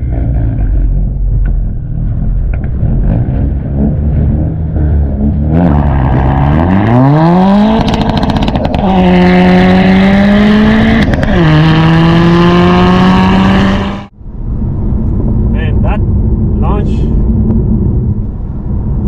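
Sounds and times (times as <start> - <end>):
car engine revving hard: 2.8 - 14.1.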